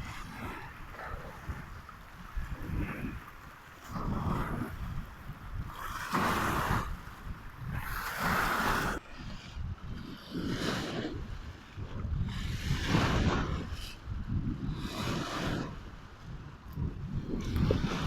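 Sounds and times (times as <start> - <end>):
sea water washing in swells: 0.0 - 18.0
wind rumble on microphone: 0.0 - 18.0.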